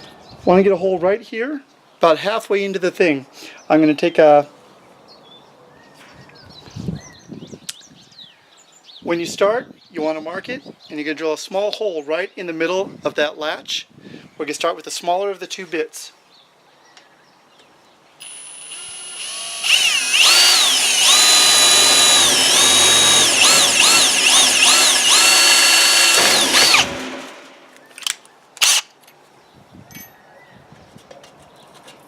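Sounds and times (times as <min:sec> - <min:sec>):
electric drill whining: 0:18.2 - 0:27.5
sharp clicks: 0:27.7 - 0:28.9.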